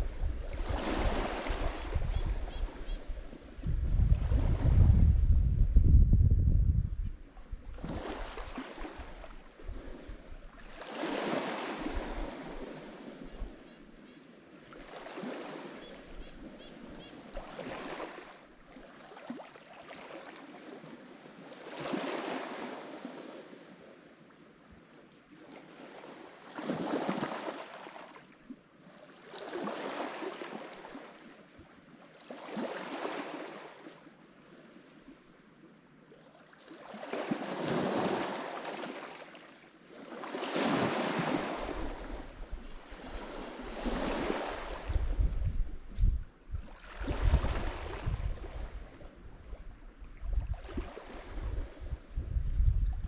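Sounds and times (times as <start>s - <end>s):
waves breaking on shore: 0.0s - 5.2s, 7.3s - 52.2s.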